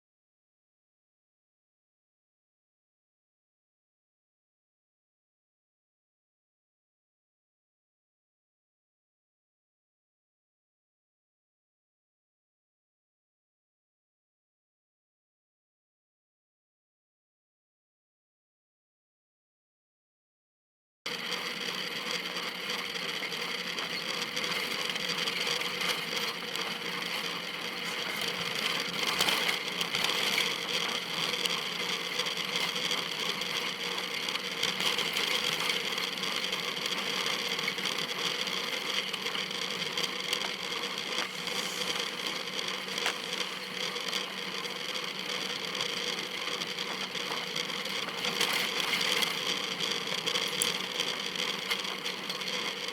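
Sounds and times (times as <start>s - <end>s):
steady hum: 21.2s - 52.9s.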